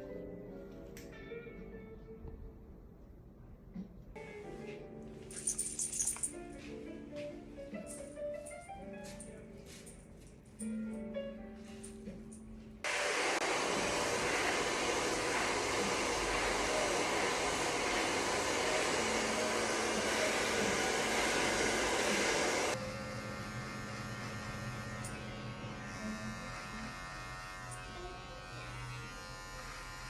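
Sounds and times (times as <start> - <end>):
hair dryer blowing: 12.9 - 26.0
electric clippers buzzing: 12.9 - 30.0.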